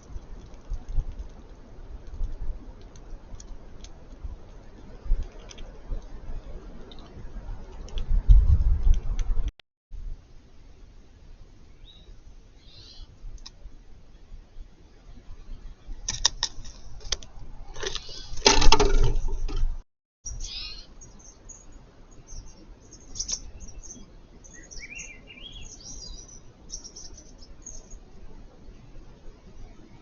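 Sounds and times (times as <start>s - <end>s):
birds chirping: 11.7s - 13.2s, 17.9s - 18.4s, 20.3s - 28.9s.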